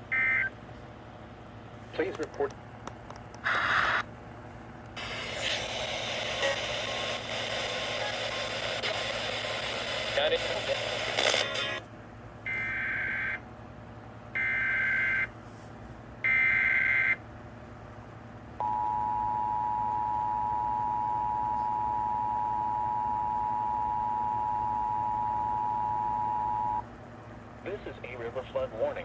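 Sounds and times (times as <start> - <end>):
two-tone attention signal: 18.6 - 26.8.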